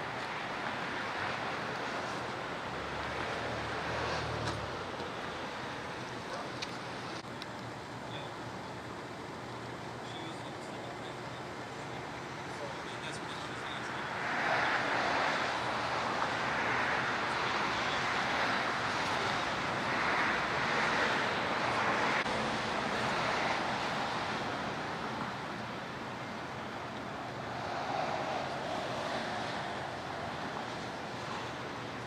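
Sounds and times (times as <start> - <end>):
passing traffic tyre hiss: 12.6 - 25.6, 26.3 - 32.0.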